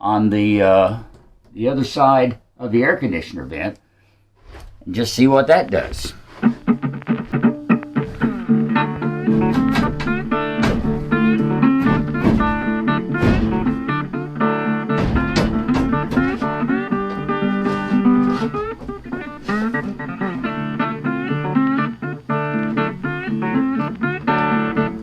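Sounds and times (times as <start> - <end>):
bluesy guitar instrumental: 5.5 - 25.0.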